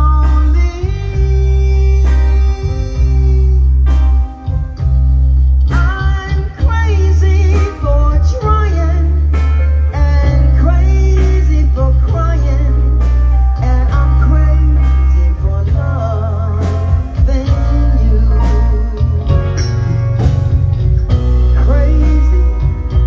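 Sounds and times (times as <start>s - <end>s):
person singing: 0.0s - 4.6s, 5.7s - 23.0s
band playing a song: 0.0s - 23.0s
heavy bass line: 0.0s - 23.0s
drum hits: 18.4s - 23.0s.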